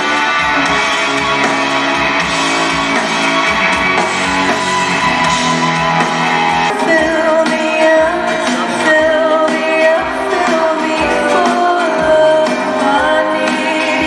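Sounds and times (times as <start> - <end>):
guitar: 0.0 - 14.0
live band music: 0.0 - 14.0
person singing: 6.6 - 14.0.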